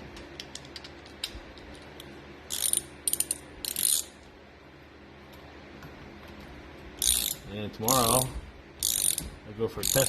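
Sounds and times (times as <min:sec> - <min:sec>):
ratchet wrench clicking: 0:02.5 - 0:04.1, 0:07.0 - 0:09.2, 0:09.8 - 0:10.0.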